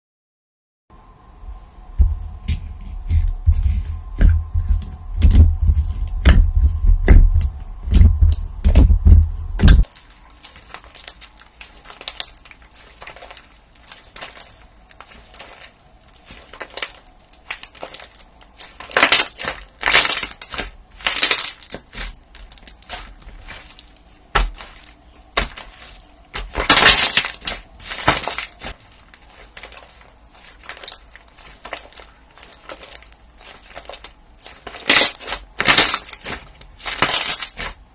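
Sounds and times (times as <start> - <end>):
deep thuds: 1.9 - 9.9
crunchy material crackling: 2.0 - 37.9.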